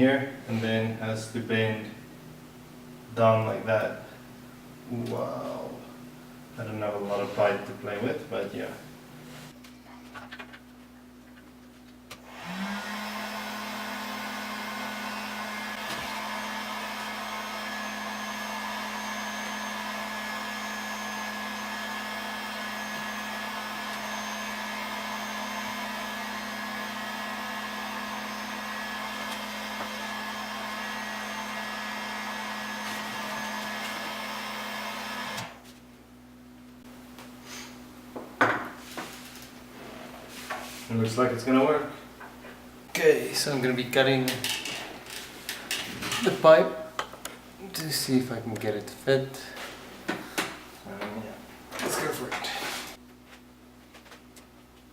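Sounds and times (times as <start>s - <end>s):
heat gun blowing: 12.2s - 35.6s.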